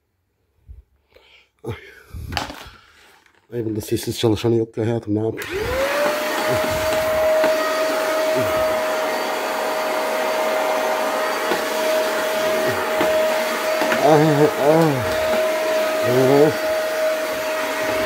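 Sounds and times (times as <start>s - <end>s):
vacuum cleaner running: 5.4s - 18.0s.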